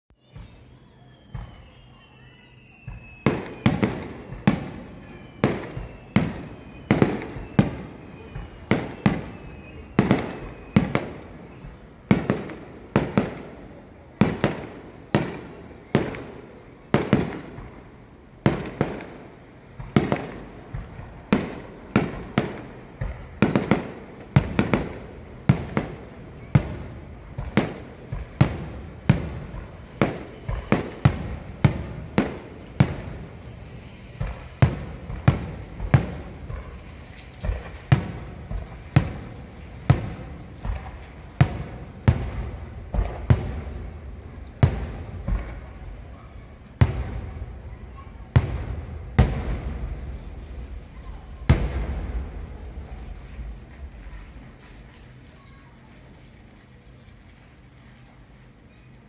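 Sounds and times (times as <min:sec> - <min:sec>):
falling firework whistles: 0:00.2 - 0:55.7
firework shells bursting: 0:19.8 - 0:55.4.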